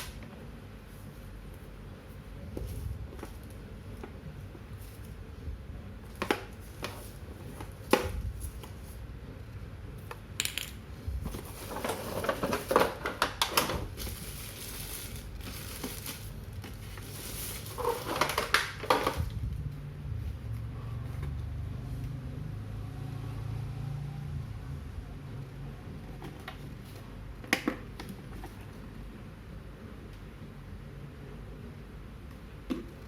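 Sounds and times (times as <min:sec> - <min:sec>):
plastic crinkling and rustling: 0:06.0 - 0:09.0, 0:11.2 - 0:19.4.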